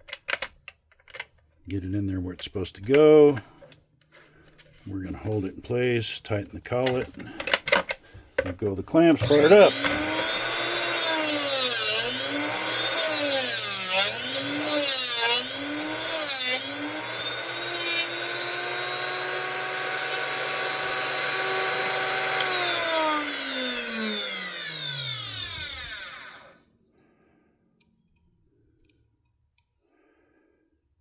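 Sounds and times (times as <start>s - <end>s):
harsh grinding: 8.9s - 26.5s
drill bit sharpener motor running: 9.2s - 26.6s.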